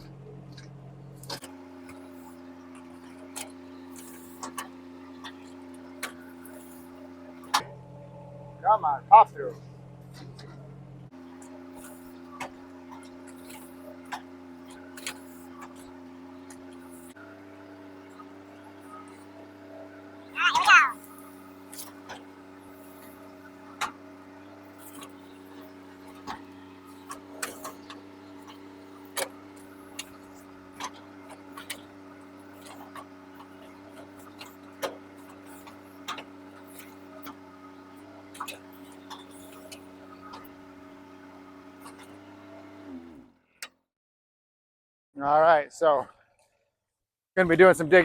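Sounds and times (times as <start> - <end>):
diesel engine running: 0.0 - 43.5, 47.4 - 48.0.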